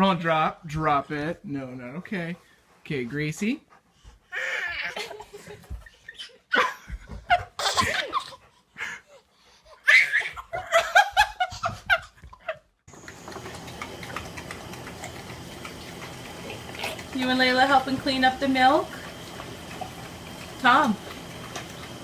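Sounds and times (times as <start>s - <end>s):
person laughing: 9.9s - 12.7s.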